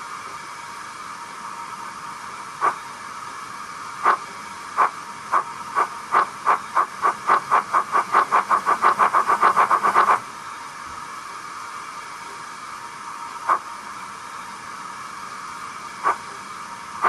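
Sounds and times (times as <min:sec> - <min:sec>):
steam hiss: 0:00.0 - 0:17.0
steam locomotive exhaust chuffs: 0:02.6 - 0:02.9, 0:03.8 - 0:10.3.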